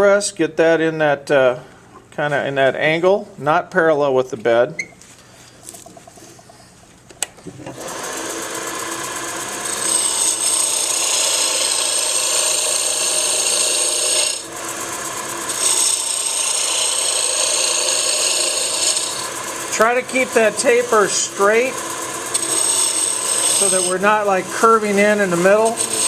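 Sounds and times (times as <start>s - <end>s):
gouge cutting wood on a lathe: 7.7s - 26.0s.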